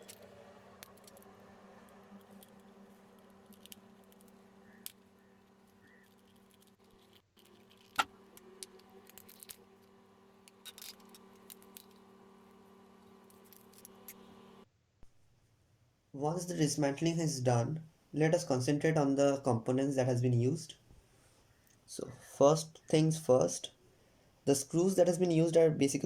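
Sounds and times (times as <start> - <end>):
plastic parts clicking and rattling: 0.0 - 1.3, 2.2 - 12.1, 13.0 - 14.2
steady low hum: 0.0 - 15.2.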